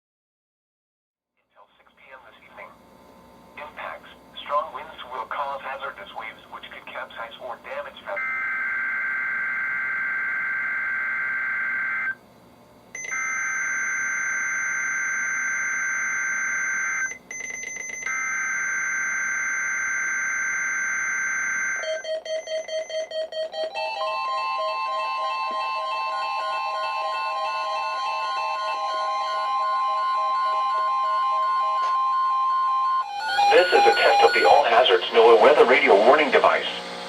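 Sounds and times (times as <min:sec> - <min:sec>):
data tone bursts from radio speaker: 0:33.4 - 0:36.8.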